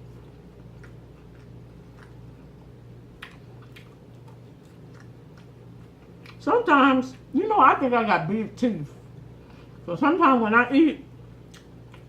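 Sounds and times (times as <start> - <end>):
close-up chewing: 0.0 - 6.5, 11.4 - 12.0
steady low hum: 0.0 - 12.0
wet mouth clicks and smacks: 3.2 - 5.5.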